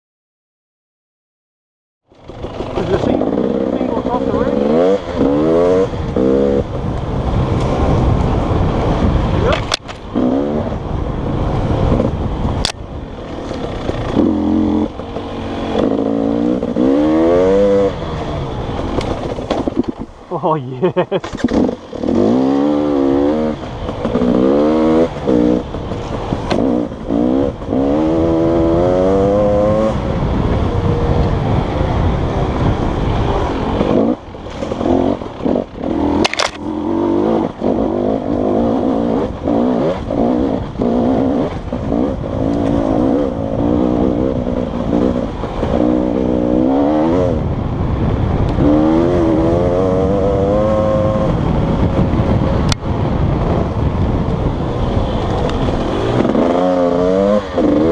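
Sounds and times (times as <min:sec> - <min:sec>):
dirt bike engine revving: 0:02.2 - 0:52.4, 0:54.6 - 0:57.9.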